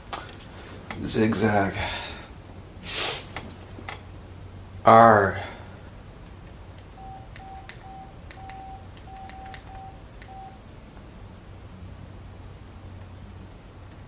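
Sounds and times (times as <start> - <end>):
morse code beeps: 7.0 - 10.6.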